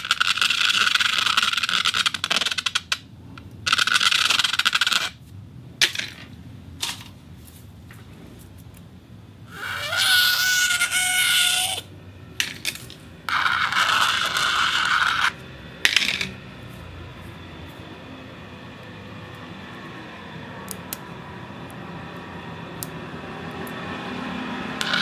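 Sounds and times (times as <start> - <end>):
object scraping on spinning turntable: 13.3 - 15.4.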